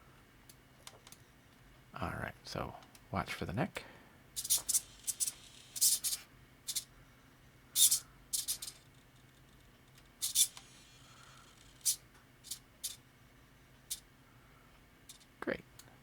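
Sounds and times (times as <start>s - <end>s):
servo buzzing: 4.4s - 6.9s, 7.8s - 8.8s, 10.2s - 13.0s.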